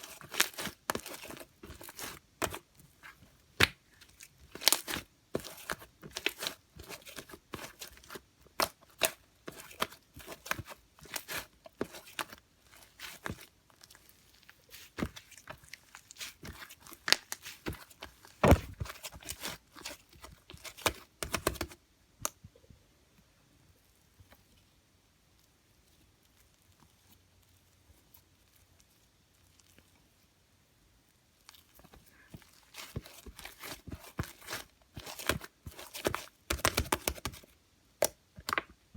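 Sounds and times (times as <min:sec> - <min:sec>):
slime squishing with sticky pops: 0:00.0 - 0:22.5, 0:31.3 - 0:38.8.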